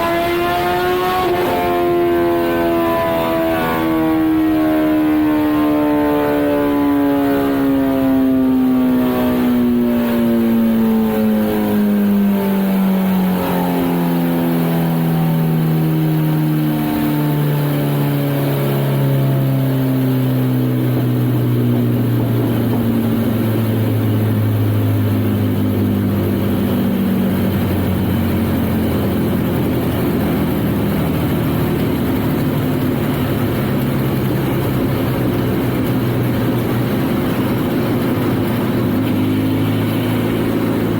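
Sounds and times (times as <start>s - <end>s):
motorcycle engine winding down: 0.0s - 5.3s.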